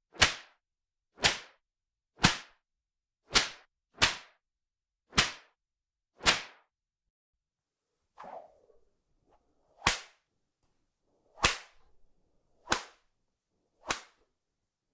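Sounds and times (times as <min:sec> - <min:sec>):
whip cracking: 0:08.2 - 0:10.2, 0:11.2 - 0:13.0, 0:13.8 - 0:14.2.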